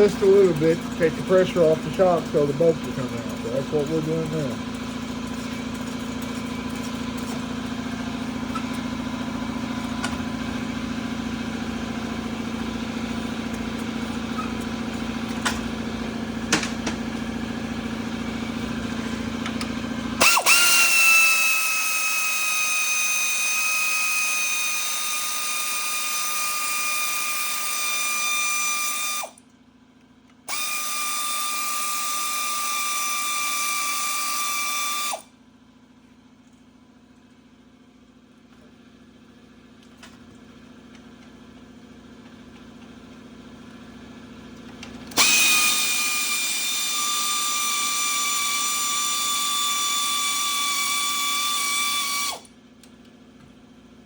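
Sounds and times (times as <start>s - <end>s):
power tool whining: 0.0s - 29.4s, 30.4s - 35.3s, 44.8s - 52.5s
steady mechanical hum: 0.0s - 54.0s.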